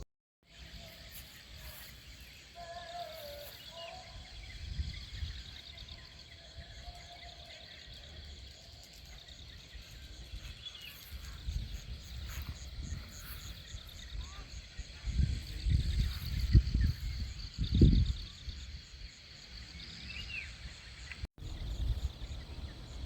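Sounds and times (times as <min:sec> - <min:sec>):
bird chirps: 0:00.5 - 0:23.0
insects chirping: 0:00.5 - 0:23.0
low wind rumble: 0:09.4 - 0:19.1, 0:21.4 - 0:23.0.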